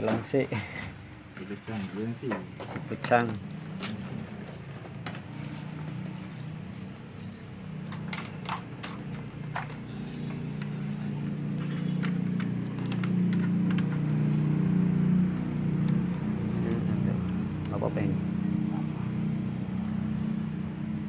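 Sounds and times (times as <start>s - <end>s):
low engine hum: 2.5s - 21.0s
small clicks and taps: 10.6s - 14.3s.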